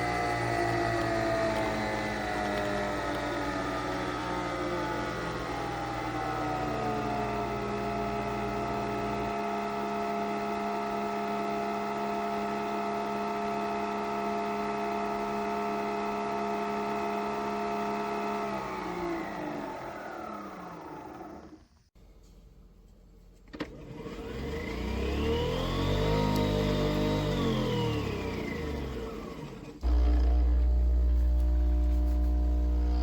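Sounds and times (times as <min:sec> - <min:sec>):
coffee machine motor whine: 0:00.0 - 0:21.8, 0:23.7 - 0:33.0
deeper hum: 0:29.8 - 0:33.0.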